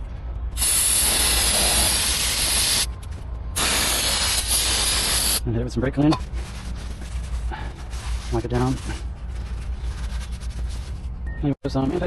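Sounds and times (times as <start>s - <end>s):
aerosol spray bursts: 0.6s - 2.9s, 3.6s - 5.4s.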